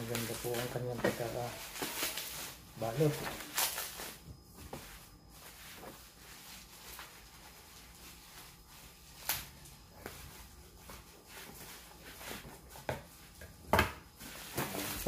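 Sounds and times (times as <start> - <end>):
packaging rustling: 0.0 - 4.2.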